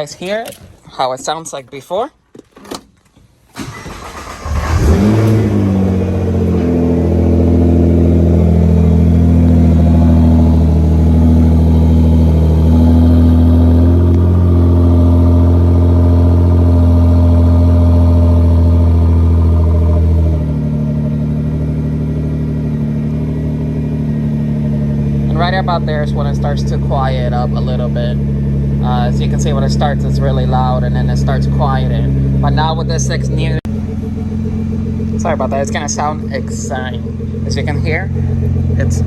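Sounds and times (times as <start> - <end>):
starter motor cranking: 3.5 - 5.9
car engine revving and idling: 3.6 - 39.0.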